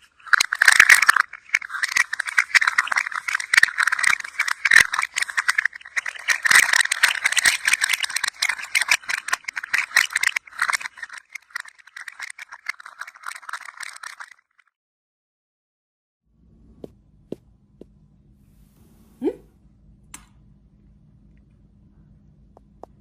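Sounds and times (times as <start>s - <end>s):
rattle toy clattering: 0.0s - 14.6s.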